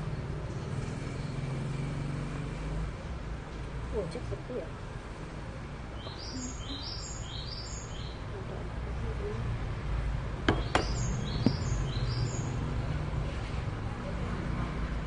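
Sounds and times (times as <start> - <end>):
small bird chirping: 6.0 - 8.3, 10.5 - 12.6
sharp knocks: 10.5 - 11.6.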